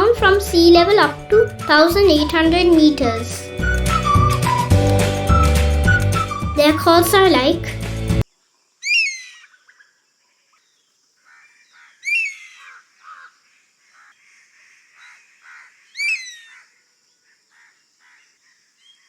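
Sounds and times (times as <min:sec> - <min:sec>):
bird whistled call: 0:03.6 - 0:06.6, 0:08.8 - 0:09.6, 0:12.0 - 0:12.7, 0:15.9 - 0:16.6.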